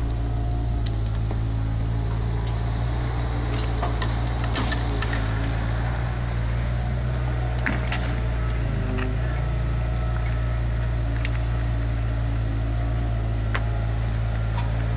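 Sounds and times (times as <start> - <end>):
knocks and clatters of digging: 0.0 - 6.0, 7.4 - 9.6
diesel engines running: 0.0 - 14.9.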